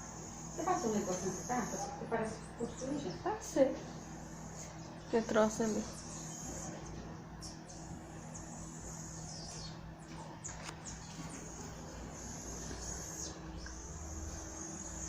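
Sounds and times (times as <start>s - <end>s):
monkeys chirping and trilling: 0.0s - 15.0s
steady low hum: 0.0s - 15.0s.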